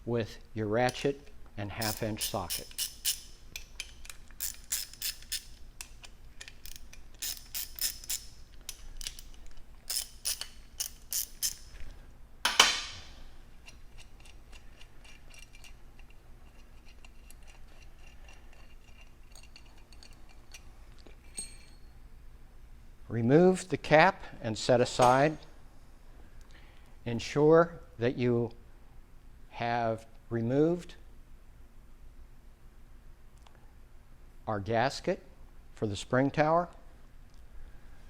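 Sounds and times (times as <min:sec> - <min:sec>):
hand ratchet clicking: 0:01.8 - 0:11.7.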